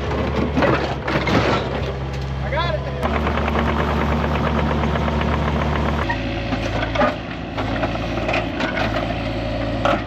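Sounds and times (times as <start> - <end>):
excavator engine running: 0.0 - 10.0.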